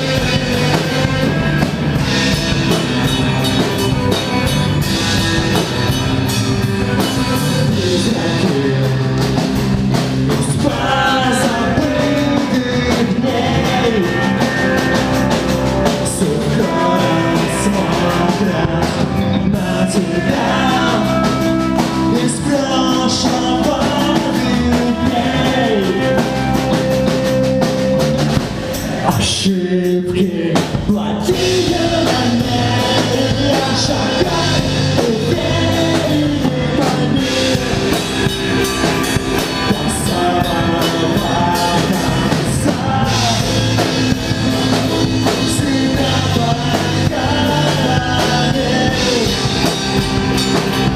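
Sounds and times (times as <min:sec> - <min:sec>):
rock band playing: 0:00.0 - 0:50.9.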